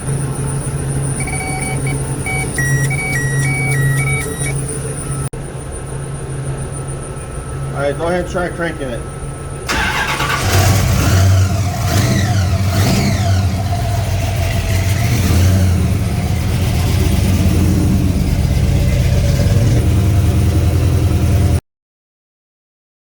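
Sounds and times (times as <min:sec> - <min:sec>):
supercharged engine revving and idling: 0:09.7 - 0:21.6.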